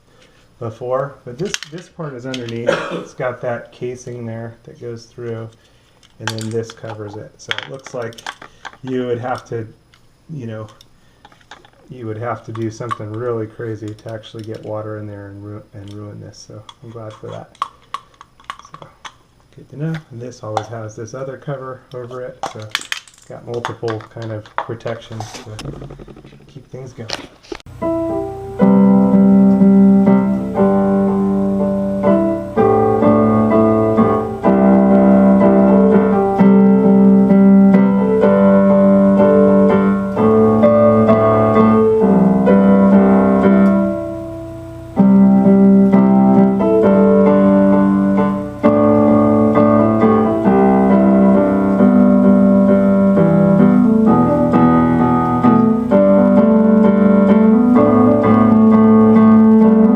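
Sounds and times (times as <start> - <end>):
piano-like keyboard chords: 0.6 - 4.5, 27.7 - 59.9.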